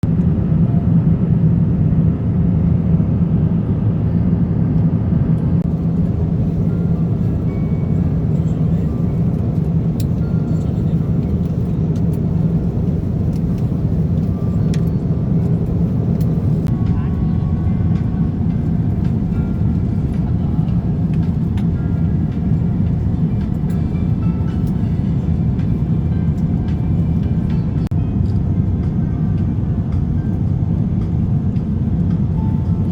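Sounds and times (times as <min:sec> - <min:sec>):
airliner cabin roar: 0:00.0 - 0:32.9
airplane engines and airflow rumble: 0:00.0 - 0:32.9
constant low hum: 0:00.0 - 0:32.9.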